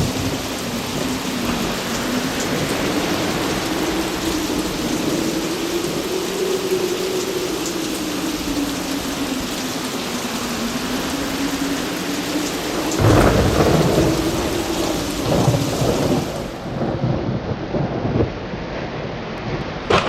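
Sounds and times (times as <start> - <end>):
heavy rain: 0.0 - 20.0
thunderclap and rolling thunder: 0.0 - 20.0.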